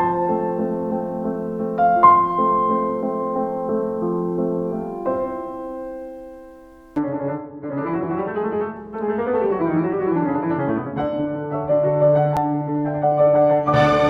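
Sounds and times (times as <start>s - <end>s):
piano music: 0.0s - 7.0s, 11.2s - 14.0s.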